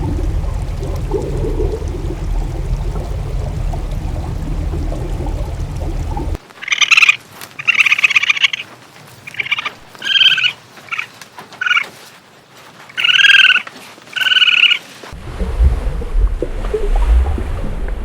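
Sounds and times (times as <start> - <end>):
animal calling: 6.6 - 8.7, 9.3 - 12.0, 12.9 - 14.9.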